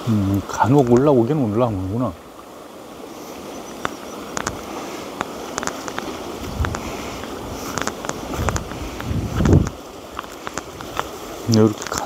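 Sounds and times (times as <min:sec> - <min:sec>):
wind on microphone: 0:03.3 - 0:12.0
sharp crackles and clicks: 0:03.7 - 0:12.0.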